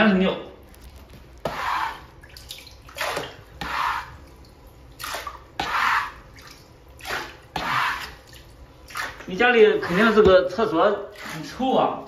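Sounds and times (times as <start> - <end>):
water splashing and swishing: 1.4 - 10.2.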